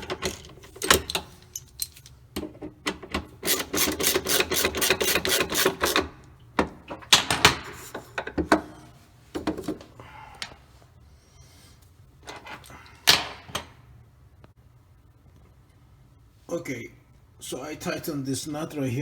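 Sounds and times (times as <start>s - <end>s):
socket ratchet clicking: 3.4s - 6.1s.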